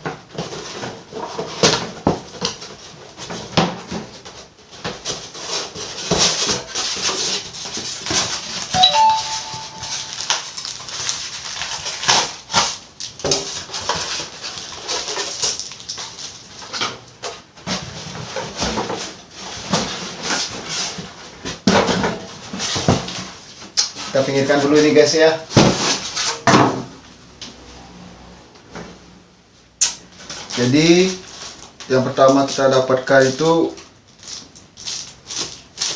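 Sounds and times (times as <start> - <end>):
plastic and cardboard rustling: 0.0 - 26.9, 30.0 - 35.9
short electronic ding: 8.8 - 10.4.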